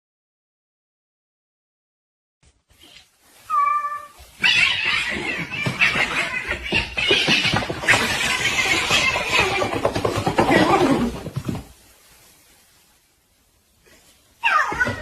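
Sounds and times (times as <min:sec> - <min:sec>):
cat meowing: 0:03.5 - 0:09.8, 0:14.4 - 0:15.0
noisy rustling and clattering: 0:04.2 - 0:15.0.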